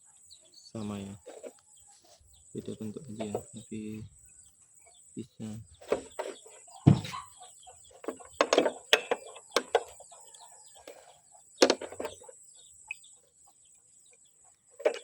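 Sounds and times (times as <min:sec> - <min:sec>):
chickens clucking: 0:00.1 - 0:15.0
sharp clicks and knocks: 0:08.0 - 0:10.0, 0:11.6 - 0:12.2.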